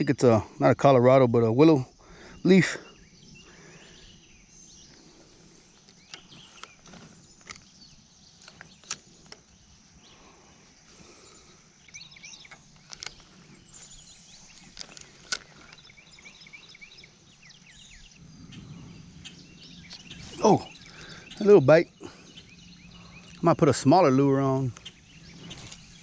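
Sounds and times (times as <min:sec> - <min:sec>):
birds chirping: 0:00.0 - 0:26.0
sharp clicks: 0:11.8 - 0:13.4.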